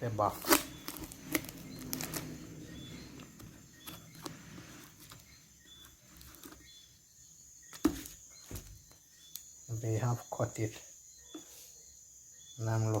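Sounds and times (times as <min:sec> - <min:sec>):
high chirps: 0:00.2 - 0:10.1
knife scraping cardboard tape: 0:00.3 - 0:02.4.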